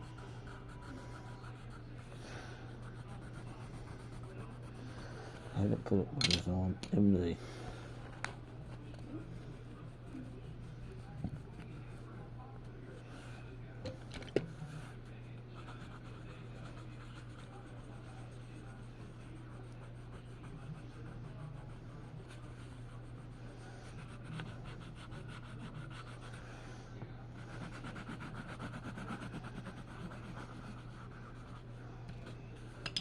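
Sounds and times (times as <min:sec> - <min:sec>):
drawing tool scratching paper: 0:15.6 - 0:26.4, 0:27.4 - 0:31.8.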